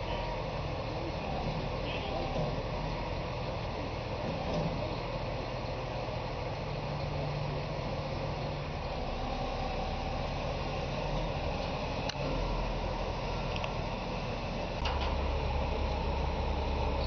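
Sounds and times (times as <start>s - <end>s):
truck engine humming: 0.0s - 17.0s.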